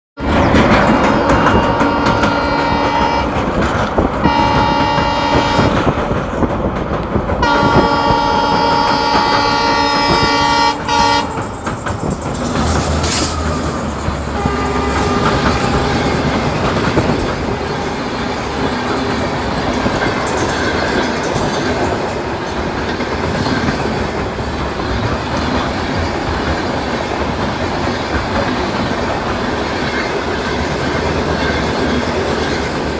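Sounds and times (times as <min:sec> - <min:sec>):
train rolling across bridge: 0:00.2 - 0:32.9
train horn blasts: 0:00.8 - 0:03.5, 0:04.2 - 0:06.0, 0:07.4 - 0:11.5, 0:13.1 - 0:19.1.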